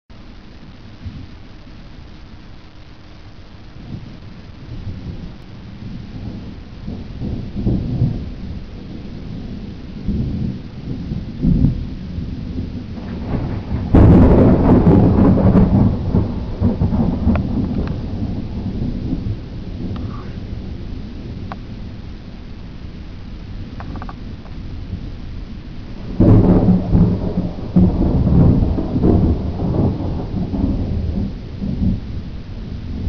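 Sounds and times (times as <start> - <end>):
steady rain: 0.1 - 33.0
thunder rumbling: 0.1 - 33.0
loud thunder clap: 6.2 - 20.7, 26.0 - 32.1.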